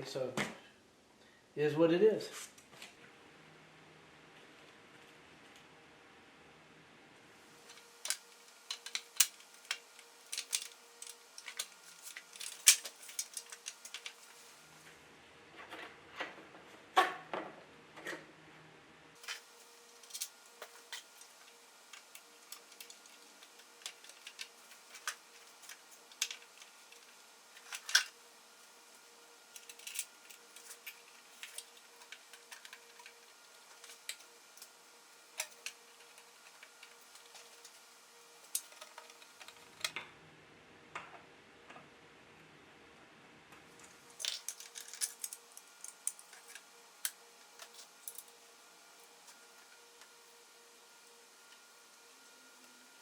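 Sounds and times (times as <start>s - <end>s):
faint steady hum: 0.0s - 53.0s
small metal parts clicking: 7.7s - 14.4s, 19.2s - 28.2s, 28.9s - 37.8s, 44.2s - 48.3s.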